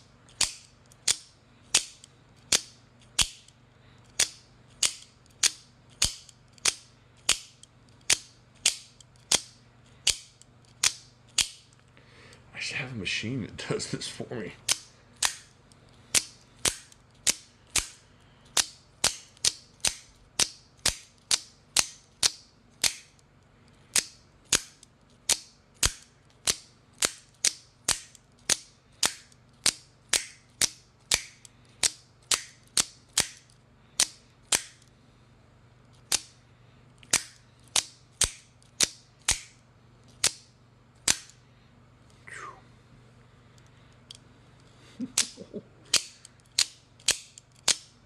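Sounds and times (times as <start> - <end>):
automatic knife blade snapping: 0.3 - 3.5.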